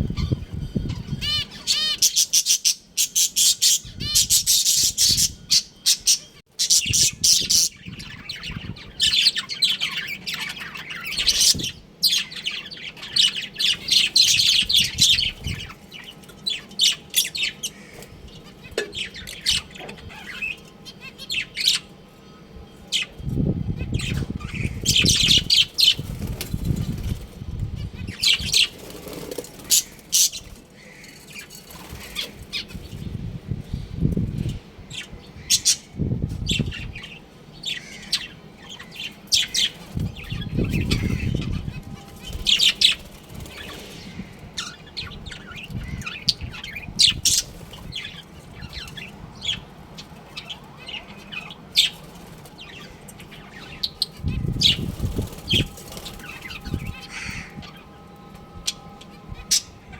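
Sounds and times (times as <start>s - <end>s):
budgerigars chirping and squawking: 0.0s - 22.0s, 22.8s - 59.9s
low rumbling noise: 38.5s - 59.9s.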